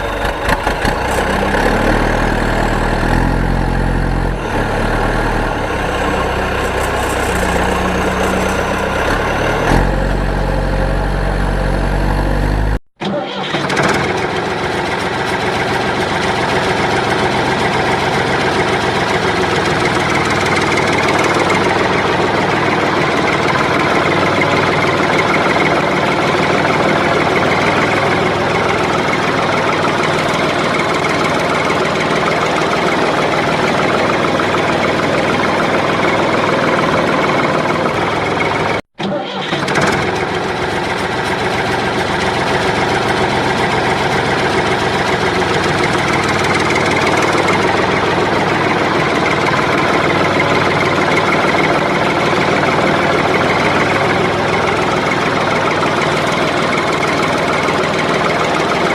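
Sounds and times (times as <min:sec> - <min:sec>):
toy car mechanical noise: 0:04.4 - 0:10.0.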